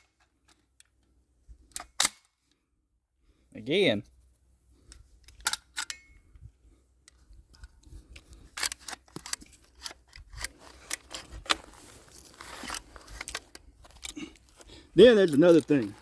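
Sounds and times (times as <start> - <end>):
metallic clicks of gun action: 1.7 - 2.5, 4.9 - 6.2, 7.0 - 11.6
rustling scraping noise: 7.6 - 16.0.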